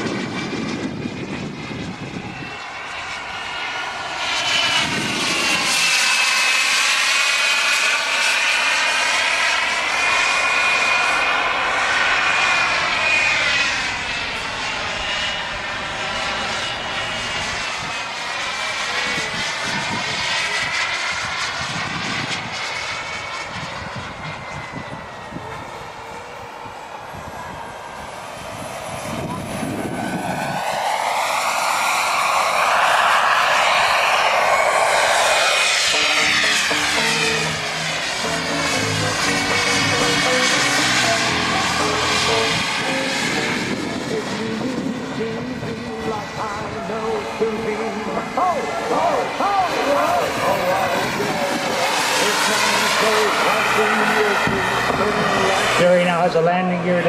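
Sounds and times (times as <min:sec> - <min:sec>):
model jet whining past: 0:00.0 - 0:57.0.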